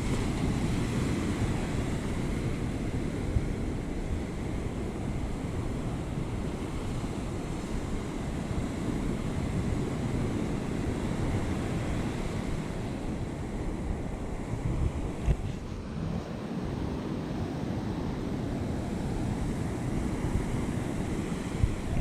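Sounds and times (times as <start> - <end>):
ocean surf washing on beach: 0.0 - 22.0
wind rumbling on microphone: 0.0 - 22.0.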